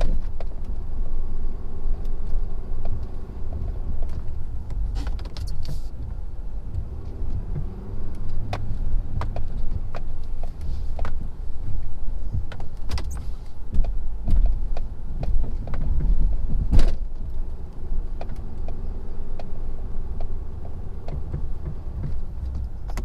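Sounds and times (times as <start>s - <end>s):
clatters and knocks: 2.2s - 17.4s, 20.2s - 23.0s.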